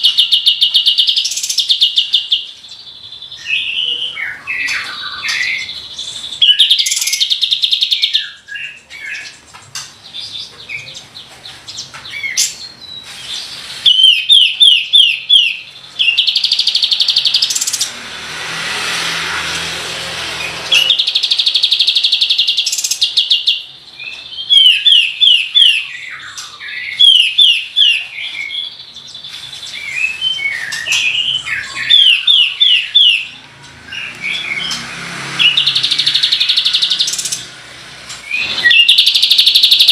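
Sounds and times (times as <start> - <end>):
bird whistling and trilling: 0.0 - 2.5, 3.2 - 9.4, 12.2 - 17.9, 20.7 - 34.8, 35.4 - 37.5, 38.2 - 39.9
rushing noise: 17.2 - 21.4.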